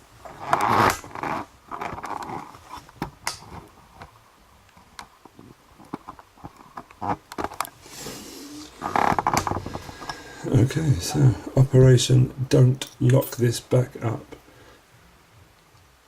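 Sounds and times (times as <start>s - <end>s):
small clicks and scrapes: 0.2s - 7.8s, 8.5s - 10.2s
camera handling rustling and scraping: 5.2s - 7.8s, 8.7s - 10.3s.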